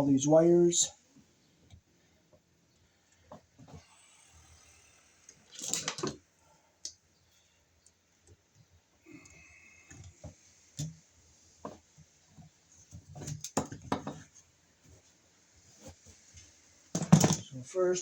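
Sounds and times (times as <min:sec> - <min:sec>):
hands handling small electrical parts: 0:05.3 - 0:06.2.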